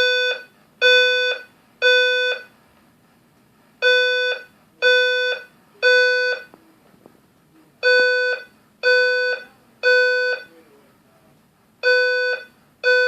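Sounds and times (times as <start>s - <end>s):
fire alarm horn blasts: 0.0s - 2.5s.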